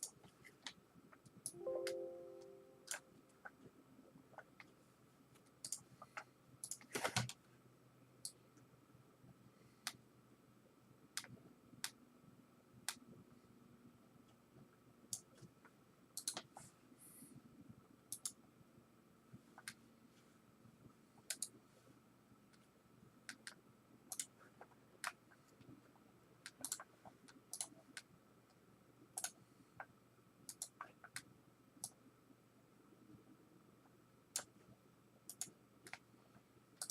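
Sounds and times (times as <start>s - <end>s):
mouse and keyboard clicks: 16.2s - 16.6s, 18.1s - 18.4s, 21.3s - 21.6s, 23.3s - 25.2s, 26.4s - 28.1s, 29.2s - 29.9s, 30.5s - 32.0s, 35.3s - 36.0s.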